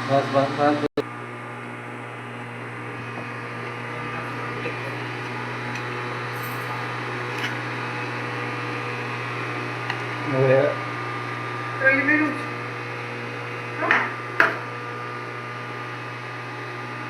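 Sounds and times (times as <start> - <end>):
motor humming: 0.0 - 17.0.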